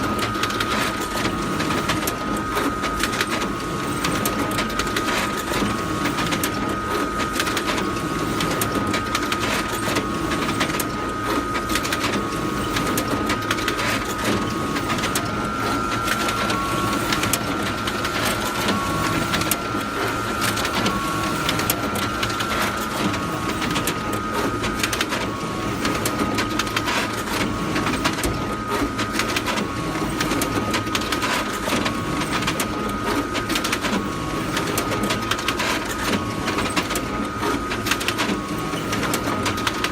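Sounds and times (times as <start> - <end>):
photocopier whirring: 0.0 - 39.9.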